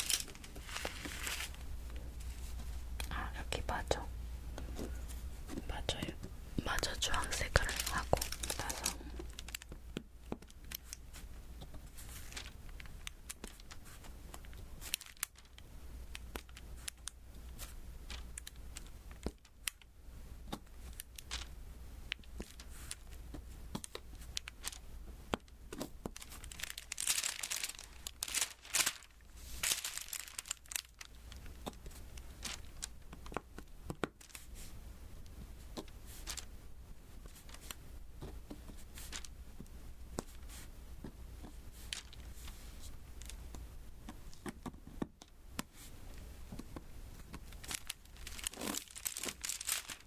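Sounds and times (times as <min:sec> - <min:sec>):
sticky crackling bursts: 0:25.8 - 0:33.3, 0:47.4 - 0:50.0.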